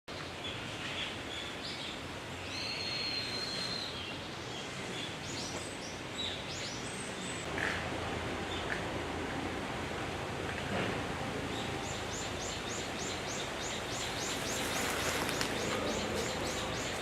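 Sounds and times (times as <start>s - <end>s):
steady background hiss: 0.1s - 17.0s
wild birds whistling and chirping: 0.9s - 7.5s, 11.5s - 17.0s.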